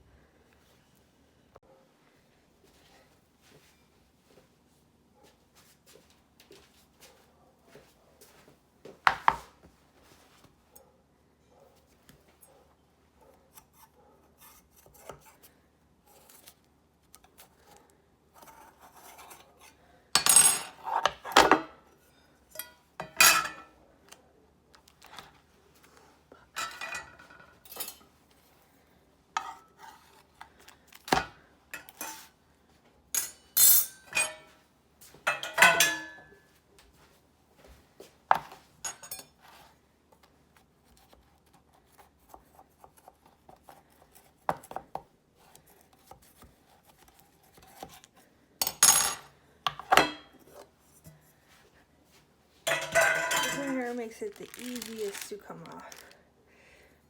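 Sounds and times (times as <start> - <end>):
metal utensil scraping baking pan: 52.7 - 54.4.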